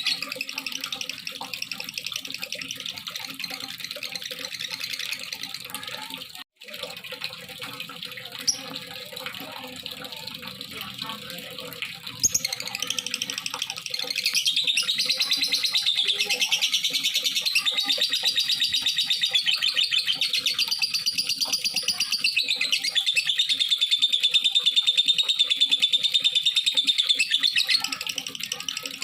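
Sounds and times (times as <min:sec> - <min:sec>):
lovebird chattering trill: 0:00.0 - 0:05.8, 0:12.2 - 0:29.0.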